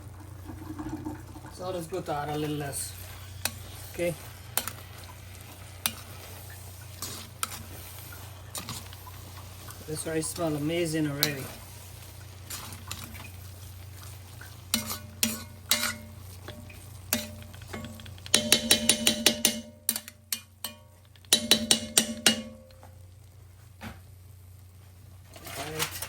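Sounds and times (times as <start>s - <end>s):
spoon knocking metal pot: 14.8s - 22.9s.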